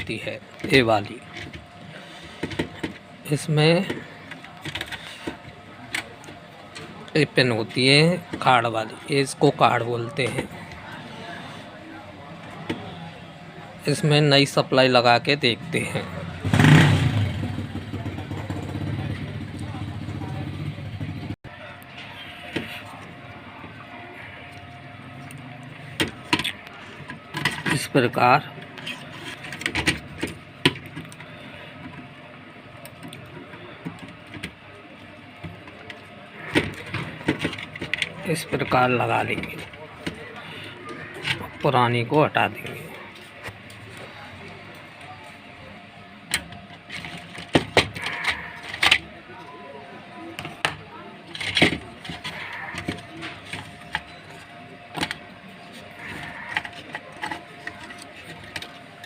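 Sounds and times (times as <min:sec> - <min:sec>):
clicks and knocks of handled parts: 0:00.0 - 0:11.0, 0:21.8 - 0:41.6, 0:46.2 - 0:49.1, 0:50.3 - 0:59.0
steady background noise: 0:00.0 - 0:59.0.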